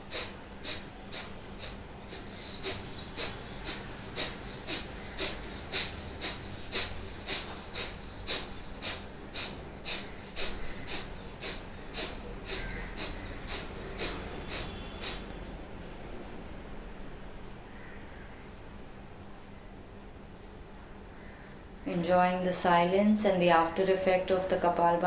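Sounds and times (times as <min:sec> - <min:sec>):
forceful nasal exhalations: 0:00.0 - 0:15.4.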